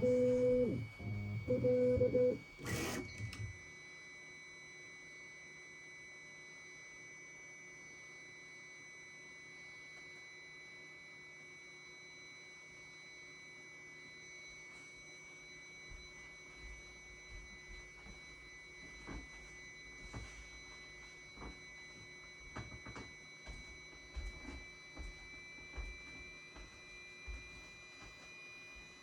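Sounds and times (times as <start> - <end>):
stepper motor tones: 0.0 - 3.5.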